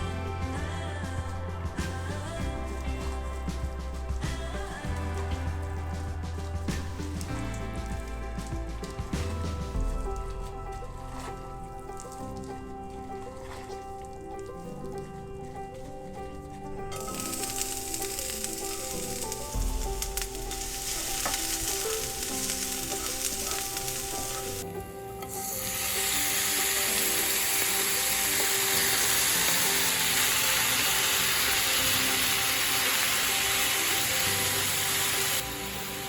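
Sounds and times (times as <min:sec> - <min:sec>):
background music: 0:00.0 - 0:36.0
food sizzling in a pan: 0:16.9 - 0:36.0.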